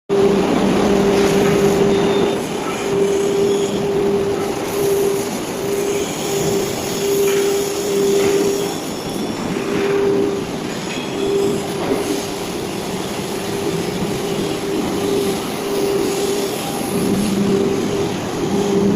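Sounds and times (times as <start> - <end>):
buzzing hum: 0.1 - 8.8.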